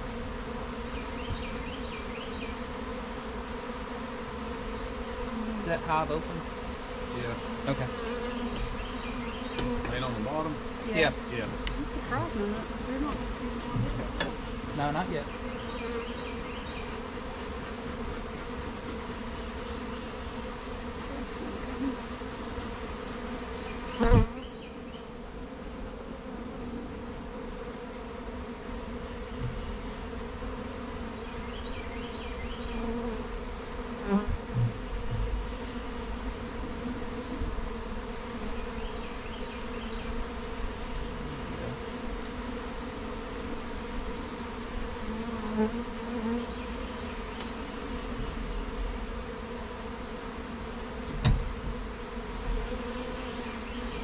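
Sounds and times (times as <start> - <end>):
honeybees buzzing: 0.0 - 54.0
knocks on hive: 7.9 - 10.1, 13.1 - 14.8, 29.3 - 30.0, 34.2 - 36.1, 51.0 - 52.8.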